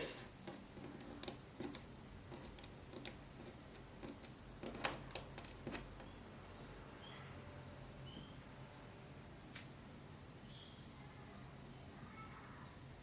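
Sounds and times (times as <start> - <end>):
small parts clicking and tapping: 0.4 - 6.2.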